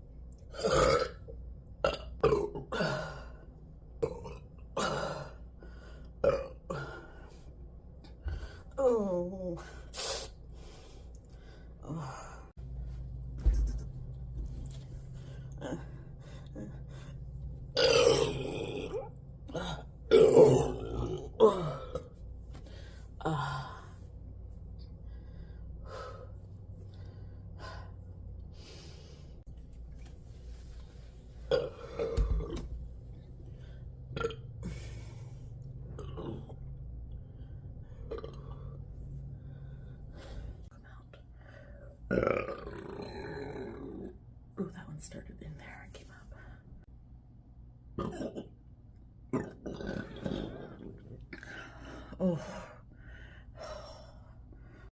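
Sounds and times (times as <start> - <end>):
loud rough burp: 0.5 - 3.1, 6.2 - 6.8, 17.8 - 19.1, 20.1 - 22.0, 34.2 - 34.7, 38.1 - 38.8, 42.1 - 44.0, 48.0 - 48.6, 49.3 - 51.0.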